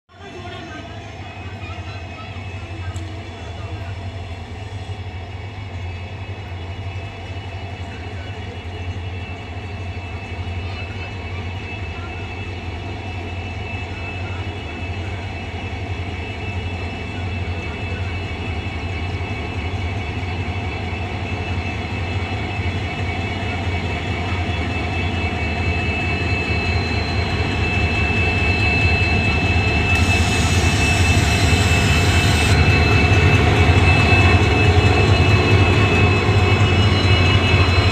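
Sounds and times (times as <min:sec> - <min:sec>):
diesel locomotives humming: 0:00.2 - 0:37.9
high hiss: 0:29.9 - 0:32.6.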